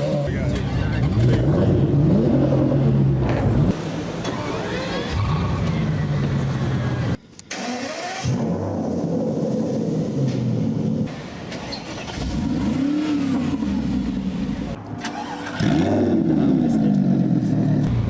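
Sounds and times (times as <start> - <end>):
car engine starting and idling: 5.6 - 18.0.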